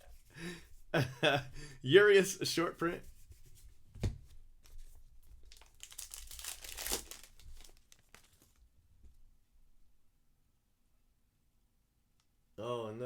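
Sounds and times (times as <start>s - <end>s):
wrapper crinkling and tearing: 5.4s - 8.7s.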